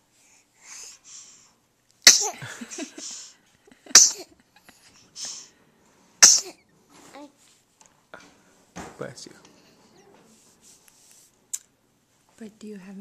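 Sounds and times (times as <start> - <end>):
sharp sneezes: 2.0 - 2.4, 3.9 - 4.3, 6.2 - 6.6.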